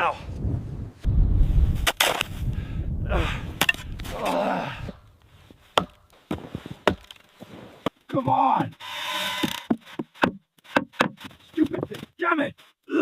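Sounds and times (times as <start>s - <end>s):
wind buffeting microphone: 0.2s - 5.0s
wooden knocks and cracks: 5.8s - 8.7s.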